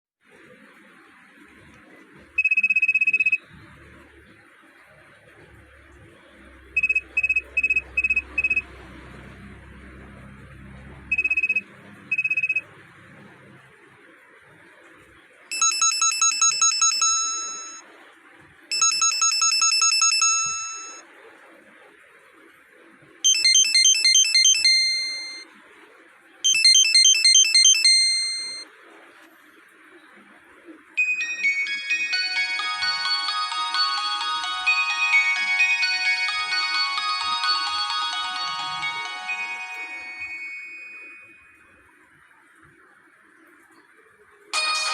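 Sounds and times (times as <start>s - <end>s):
phone ringtone melody: 2.4s - 3.5s, 6.7s - 9.3s, 11.1s - 12.7s, 15.5s - 17.8s, 18.7s - 21.0s, 23.2s - 25.4s, 26.4s - 28.7s, 31.0s - 41.8s, 44.6s - 44.9s
short beeps: 2.4s - 3.5s, 6.8s - 8.7s, 11.1s - 12.7s, 15.5s - 17.8s, 18.7s - 21.0s, 23.3s - 25.4s, 26.5s - 28.6s
bell-like melodic phrases: 31.1s - 41.5s.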